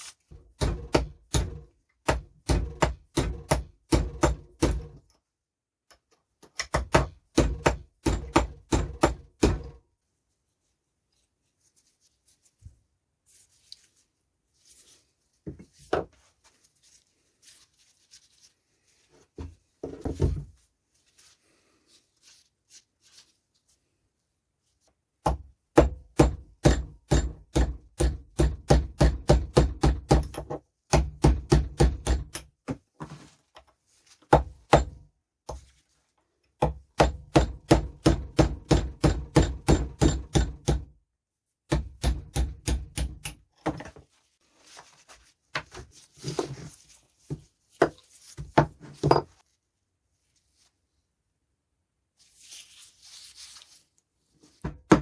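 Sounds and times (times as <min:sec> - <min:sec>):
rapid hammering: 0:00.6 - 0:05.0, 0:06.7 - 0:09.8, 0:25.3 - 0:32.5, 0:34.3 - 0:35.0, 0:36.6 - 0:40.9, 0:41.7 - 0:43.4.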